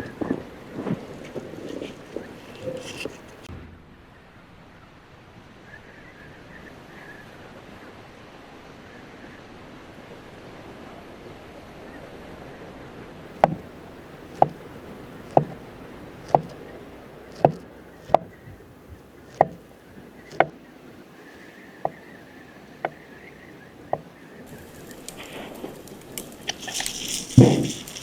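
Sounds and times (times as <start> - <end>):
wind-like hiss: 5.3 - 28.0
chopping knocks on wood: 13.4 - 13.7, 14.4 - 14.6, 15.3 - 15.6, 16.2 - 16.6, 17.3 - 18.4, 19.3 - 19.6, 20.2 - 20.6, 23.9 - 24.8, 27.4 - 28.0.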